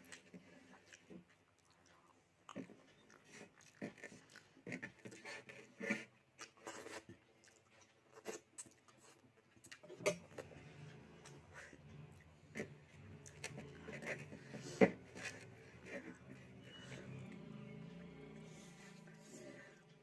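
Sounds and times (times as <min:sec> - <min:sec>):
chewing and mouth clicks: 0:00.0 - 0:16.5
low steady hum: 0:09.9 - 0:20.0.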